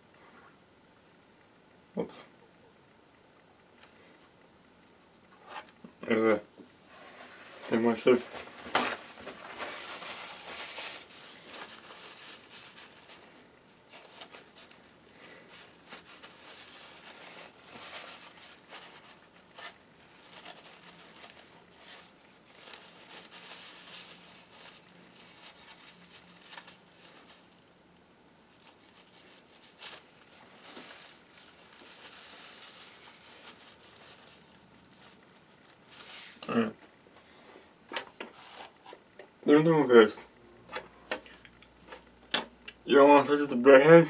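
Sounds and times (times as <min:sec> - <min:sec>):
hands rubbing and crinkling: 0:06.8 - 0:36.9.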